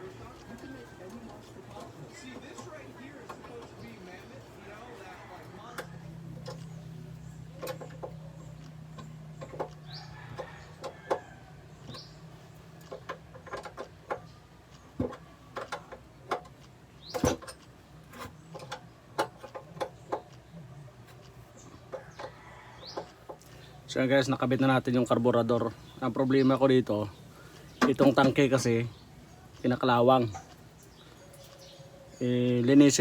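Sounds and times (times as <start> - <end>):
tools and metal parts clicking: 5.6 - 23.7, 27.5 - 33.0
bird chirps: 25.4 - 33.0.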